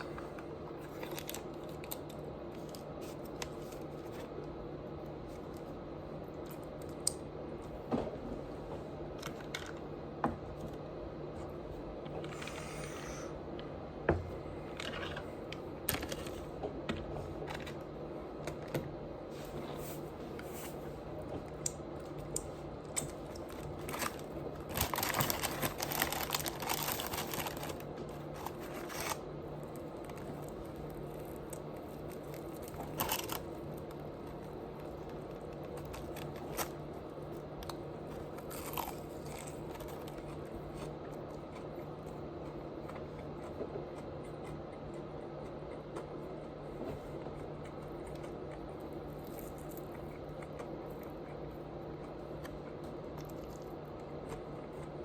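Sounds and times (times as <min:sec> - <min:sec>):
steady low hum: 0:00.0 - 0:55.0
wrapper rustling and crackling: 0:23.2 - 0:29.2, 0:30.1 - 0:34.0
eating crunches and clicks: 0:47.4 - 0:55.0.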